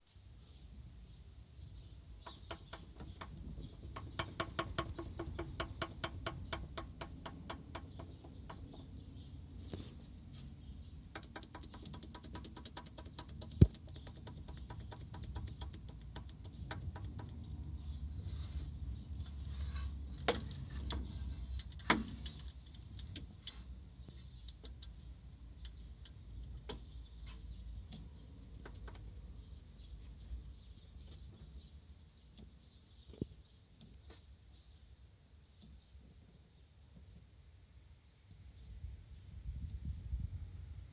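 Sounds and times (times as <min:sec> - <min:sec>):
van engine knocking: 0:02.3 - 0:08.8.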